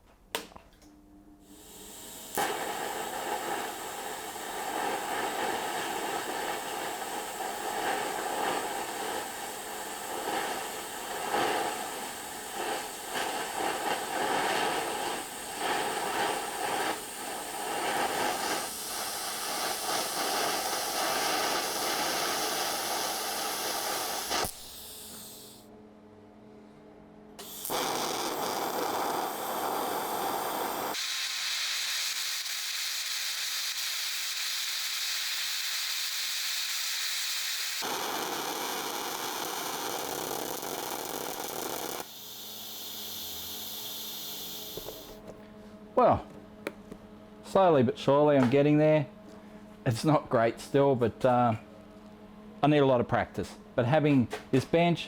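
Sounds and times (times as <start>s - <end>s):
welding arc hissing and buzzing: 1.4s - 25.7s, 27.4s - 45.2s.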